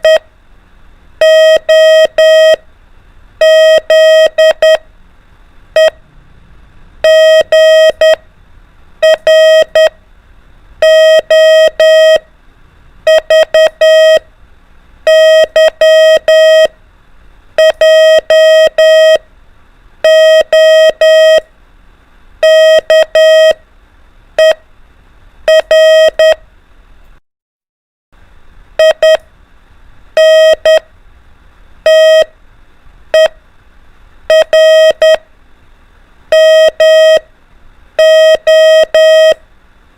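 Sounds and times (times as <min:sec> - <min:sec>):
morse code beeps: 0:00.0 - 0:00.2, 0:01.2 - 0:02.6, 0:03.4 - 0:04.8, 0:05.8 - 0:06.0, 0:07.0 - 0:08.2, 0:09.0 - 0:10.0, 0:10.8 - 0:12.2, 0:13.1 - 0:14.2, 0:15.1 - 0:16.7, 0:17.6 - 0:19.2, 0:20.0 - 0:21.4, 0:22.4 - 0:23.6, 0:24.4 - 0:24.6, 0:25.5 - 0:26.4, 0:28.8 - 0:29.2, 0:30.2 - 0:30.8, 0:31.9 - 0:32.3, 0:33.1 - 0:33.4, 0:34.3 - 0:35.2, 0:36.3 - 0:37.2, 0:38.0 - 0:39.4.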